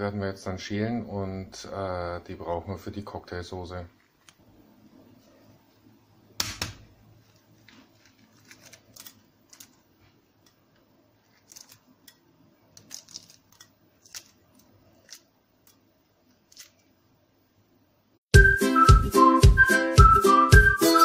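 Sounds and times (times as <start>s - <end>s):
eggshell cracking: 8.0s - 16.9s.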